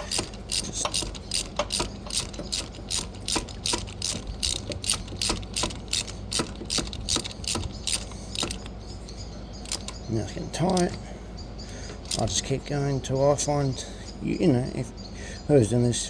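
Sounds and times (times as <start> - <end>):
ratchet wrench clicking: 0.0 - 11.0, 12.0 - 12.5.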